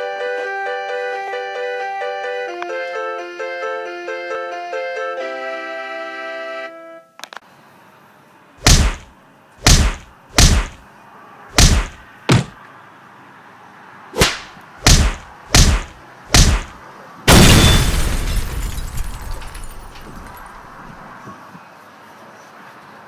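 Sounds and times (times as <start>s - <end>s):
heavy thuds: 8.6s - 10.8s, 11.5s - 12.6s, 14.2s - 21.0s.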